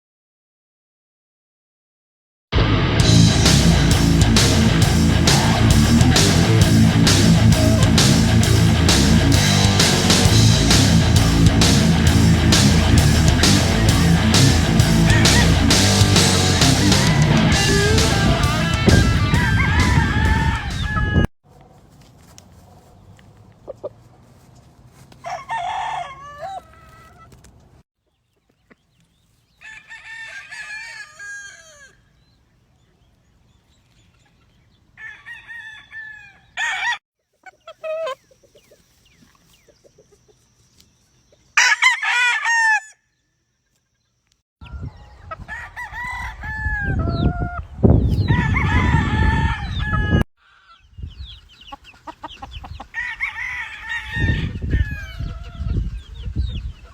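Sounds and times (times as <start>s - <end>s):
loud low rumble: 2.6s - 20.8s
roosters crowing: 3.1s - 21.3s, 24.9s - 27.4s, 29.6s - 32.3s, 34.9s - 38.9s, 41.6s - 43.3s, 44.6s - 50.8s, 52.0s - 56.1s
chickens clucking: 4.3s - 29.4s, 37.2s - 41.6s, 46.4s - 49.0s, 49.6s - 56.9s.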